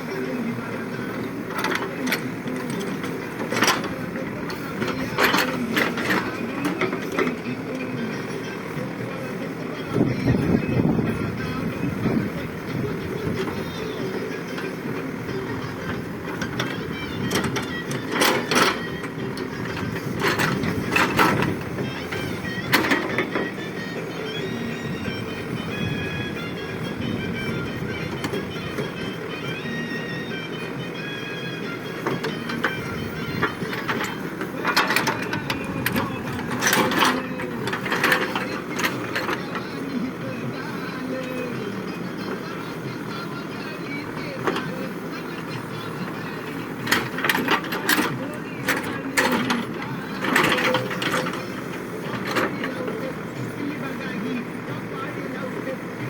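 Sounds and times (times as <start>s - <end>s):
diesel engine running: 0.0s - 56.0s
metallic clanks and rattles: 1.4s - 7.5s, 12.8s - 24.7s, 31.6s - 39.7s, 44.0s - 53.0s.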